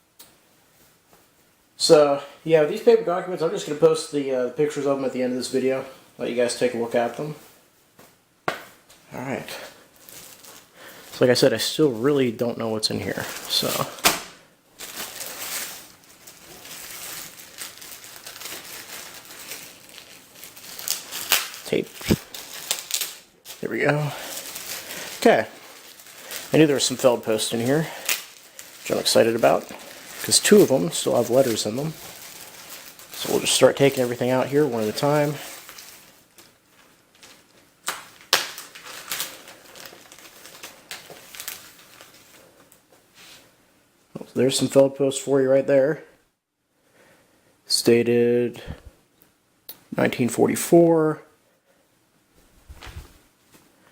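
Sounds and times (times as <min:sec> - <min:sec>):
packaging rustling and crinkling: 0:09.2 - 0:43.4.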